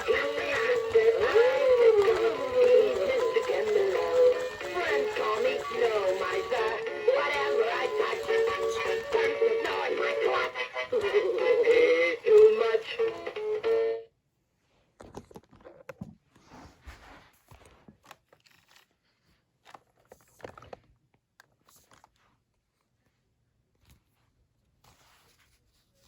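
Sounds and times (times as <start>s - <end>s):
tinny electronic christmas melody: 0.0s - 14.0s.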